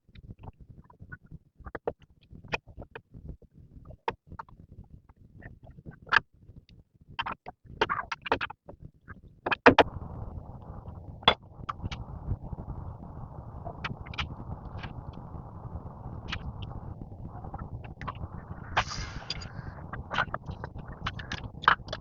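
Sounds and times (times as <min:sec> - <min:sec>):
steady low rumbling: 0:09.8 - 0:22.0.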